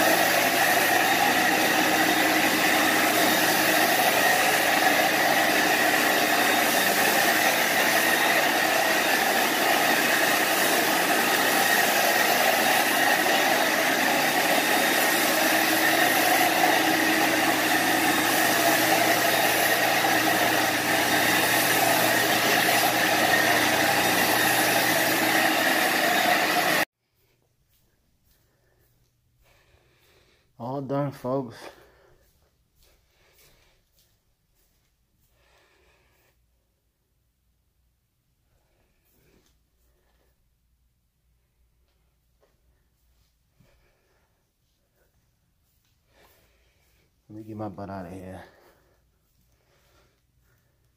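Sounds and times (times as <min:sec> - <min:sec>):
vacuum motor whining: 0:00.0 - 0:26.8.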